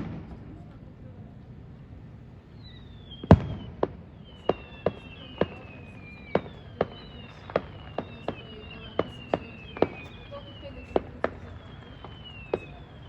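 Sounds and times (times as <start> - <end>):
fireworks bangs: 0.0 - 1.1, 2.4 - 13.0
fireworks whistles falling in pitch: 2.5 - 13.0.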